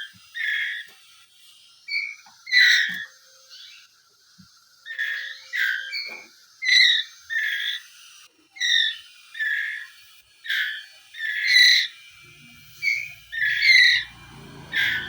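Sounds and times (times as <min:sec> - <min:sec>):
bird chick giving harsh calls: 0:12.6 - 0:15.0.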